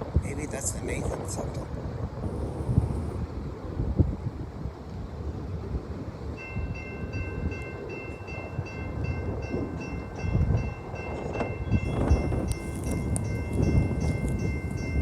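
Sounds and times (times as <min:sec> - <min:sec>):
freight train rumble: 0:00.0 - 0:15.0
high ringing bell: 0:06.4 - 0:15.0.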